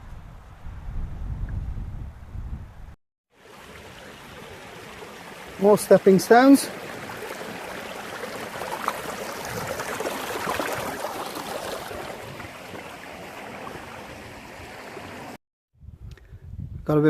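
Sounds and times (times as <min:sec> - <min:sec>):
stream babbling over stones: 0:03.4 - 0:15.4.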